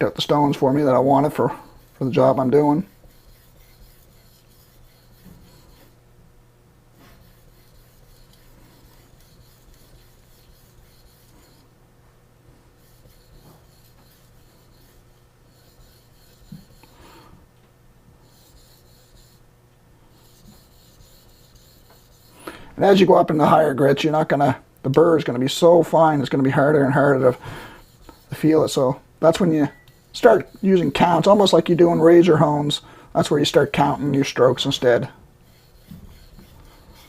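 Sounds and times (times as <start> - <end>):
knife scraping on whetstone: 0.2 - 6.0, 7.0 - 11.7, 12.8 - 17.2, 18.2 - 19.4, 20.1 - 22.4, 26.6 - 32.8, 33.4 - 37.0.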